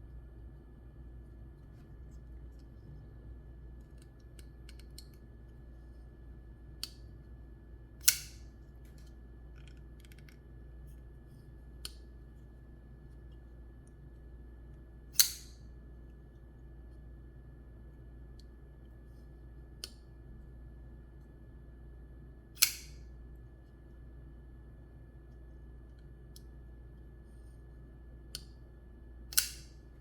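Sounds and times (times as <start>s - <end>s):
folding knife blade clicks: 8.0s - 8.4s, 15.2s - 15.6s, 22.6s - 23.0s, 29.3s - 29.8s.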